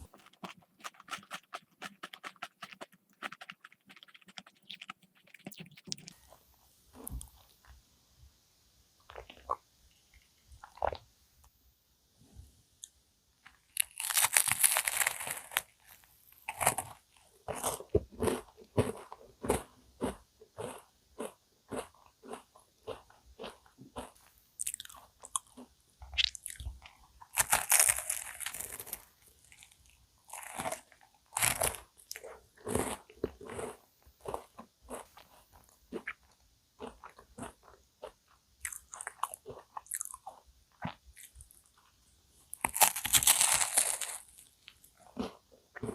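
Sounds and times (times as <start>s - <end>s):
crunching chews: 0.0s - 7.5s, 13.4s - 45.9s
crunchy bites of pastry: 13.4s - 41.6s, 42.5s - 45.9s.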